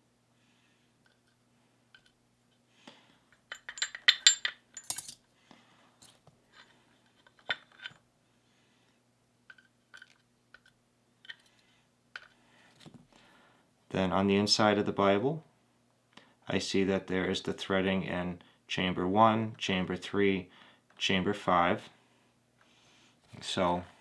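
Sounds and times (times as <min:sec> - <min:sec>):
small metal clicks and clinks: 0:03.3 - 0:05.2.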